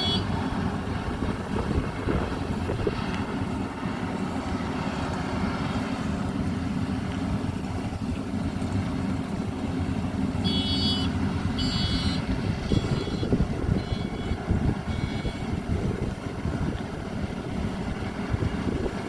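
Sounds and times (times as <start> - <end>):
harvester engine rumble: 0.0 - 19.0
short high-pitched tones: 10.4 - 15.5.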